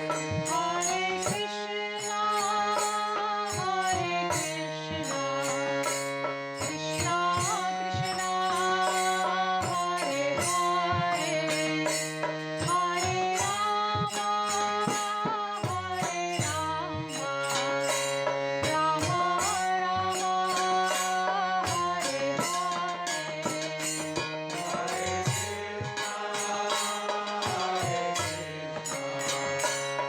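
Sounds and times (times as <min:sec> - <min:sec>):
wavering melody: 0:15.8 - 0:30.0.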